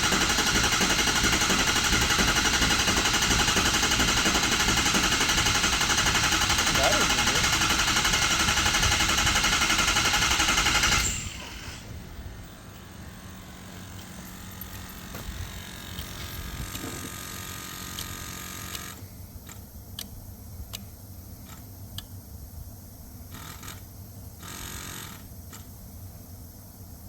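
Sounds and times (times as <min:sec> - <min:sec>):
diesel engine drone: 0:00.0 - 0:18.1.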